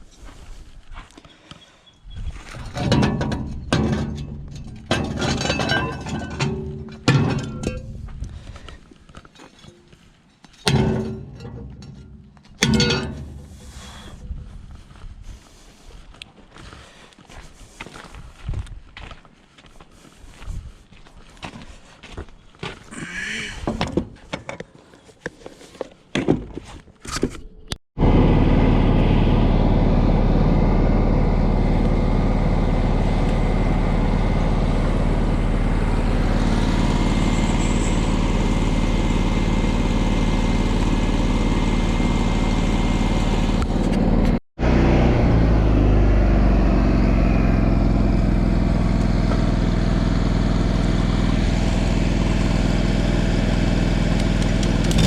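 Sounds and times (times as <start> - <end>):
knocks and clatter: 2.5 - 8.1, 10.5 - 13.6
engine running steadily: 2.8 - 8.8, 10.6 - 15.2, 28.0 - 55.0.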